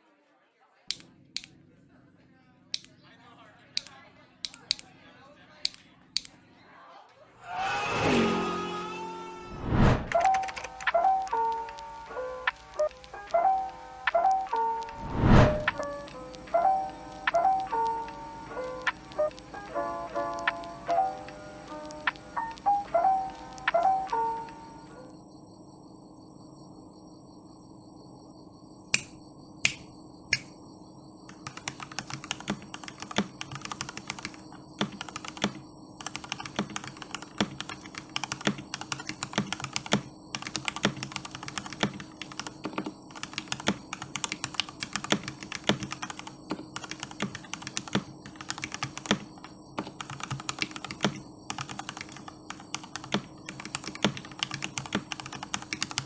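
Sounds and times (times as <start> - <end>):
mechanical keyboard typing: 10.1 - 24.6, 31.3 - 56.0.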